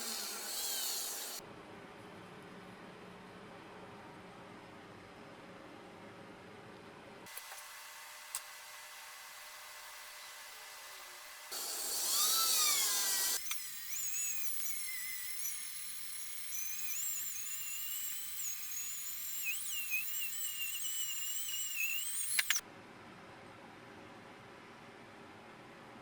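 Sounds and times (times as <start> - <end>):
power tool whining: 0.0 - 1.4, 11.5 - 22.6.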